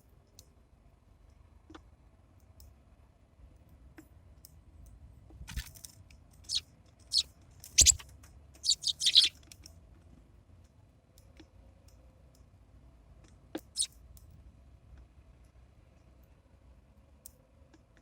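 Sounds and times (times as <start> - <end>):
sparrows chirping: 6.5 - 7.2, 7.8 - 8.0, 8.6 - 9.3.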